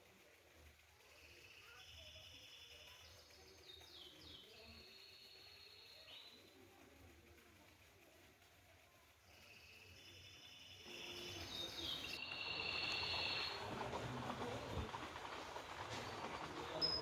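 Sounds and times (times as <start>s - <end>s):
faint birdsong trills: 1.0s - 6.7s, 9.3s - 14.9s.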